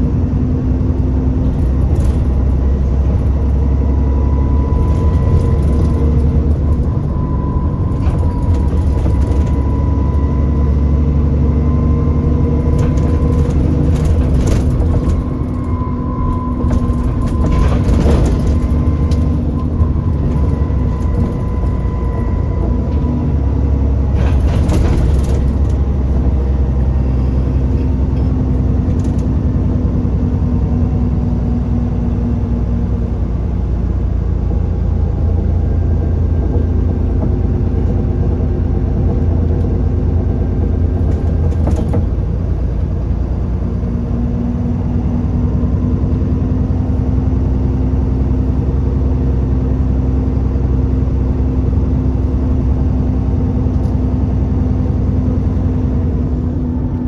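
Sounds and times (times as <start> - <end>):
bus engine and road rumble: 0.0 - 57.0
bus knocks and rattles: 0.0 - 57.0.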